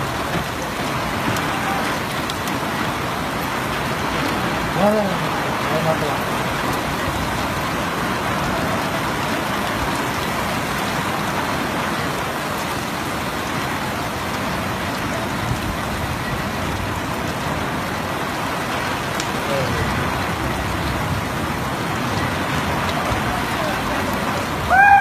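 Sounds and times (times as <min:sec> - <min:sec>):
heavy rain falling: 0:00.0 - 0:25.0.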